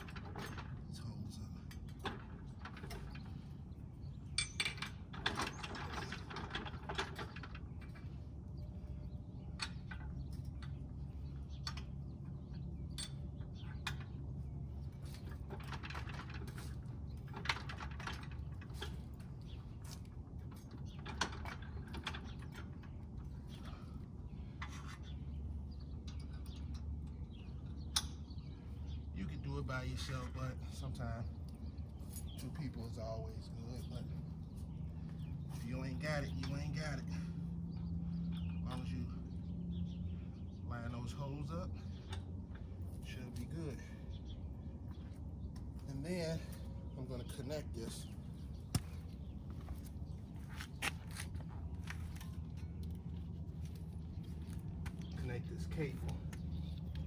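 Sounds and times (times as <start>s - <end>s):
metal clicks and clanks: 0.0s - 1.0s, 1.6s - 3.5s, 4.3s - 8.2s, 14.9s - 23.9s
steady low hum: 0.0s - 57.0s.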